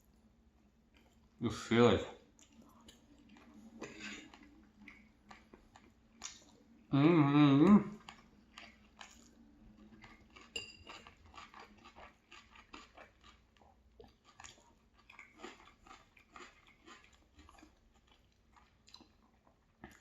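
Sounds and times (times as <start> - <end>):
chewing food: 0.0 - 1.4, 2.0 - 6.9, 7.6 - 20.0
cutlery clink: 10.4 - 11.2.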